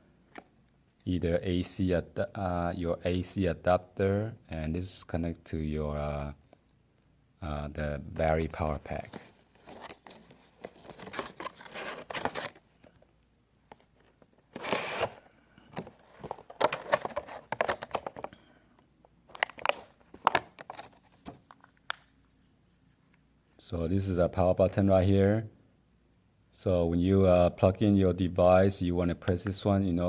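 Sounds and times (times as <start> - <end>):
plastic packaging crinkling and tearing: 9.0 - 12.6, 19.3 - 22.1.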